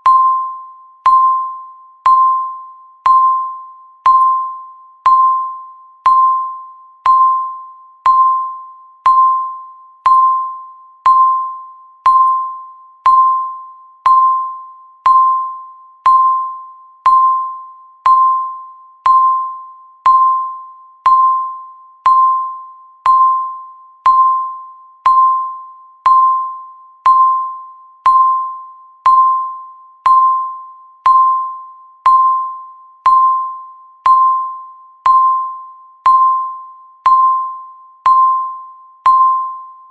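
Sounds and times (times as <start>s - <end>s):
bell-like timer ping: 0.0s - 39.9s.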